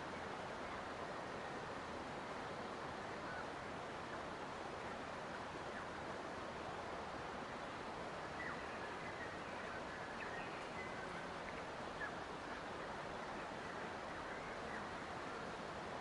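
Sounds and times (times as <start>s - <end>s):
outdoor ambience hiss: 0.0s - 16.0s
faint bird chirps: 8.3s - 15.7s.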